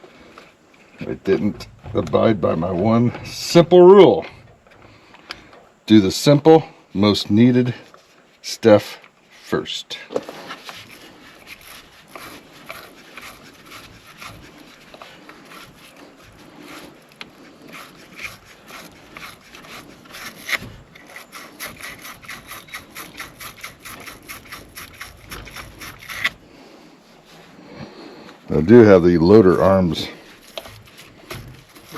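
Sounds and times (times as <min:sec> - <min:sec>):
brush scrubbing metal: 0:10.4 - 0:26.4, 0:29.2 - 0:31.9.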